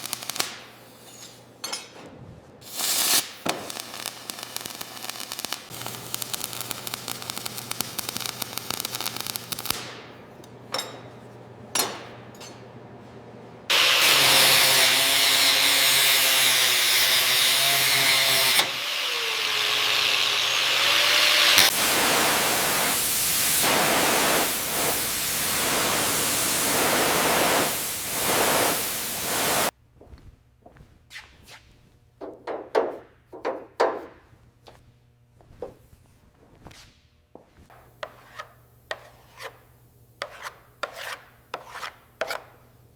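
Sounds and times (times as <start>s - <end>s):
hissing spray with whine: 2.6s - 9.8s, 17.8s - 29.7s
pulsing power tool noise: 2.7s - 9.8s, 13.7s - 29.7s.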